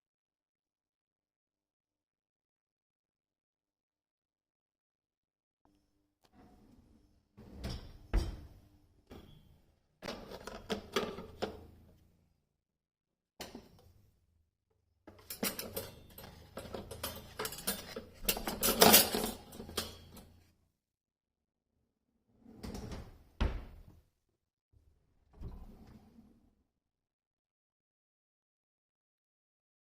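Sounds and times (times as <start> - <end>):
dishes and cutlery clattering: 15.1 - 20.4.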